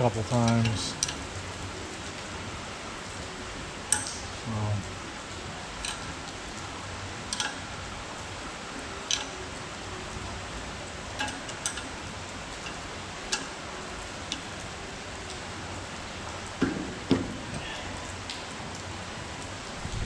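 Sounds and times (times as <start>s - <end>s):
heavy rain hiss: 0.0s - 20.0s.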